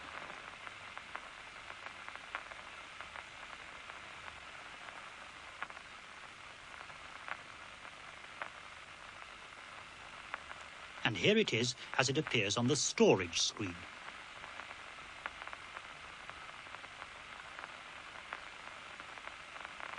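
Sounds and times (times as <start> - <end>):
faint irregular clicks: 0.1 - 5.8, 6.7 - 8.6
loudspeaker hiss: 10.8 - 15.0.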